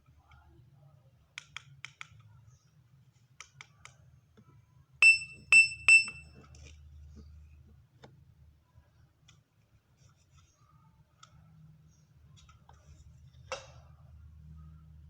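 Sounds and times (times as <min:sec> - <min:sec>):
high-pitched speaker beeps: 0:05.0 - 0:06.3.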